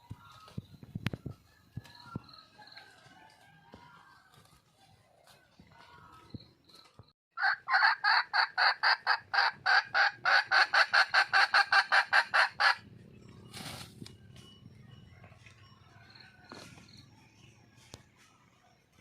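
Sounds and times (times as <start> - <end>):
hen clucking: 7.4 - 13.6.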